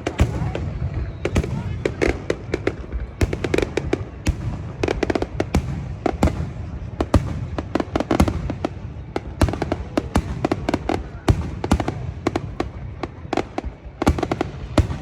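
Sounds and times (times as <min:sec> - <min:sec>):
fireworks bangs and cracks: 0:00.0 - 0:15.0.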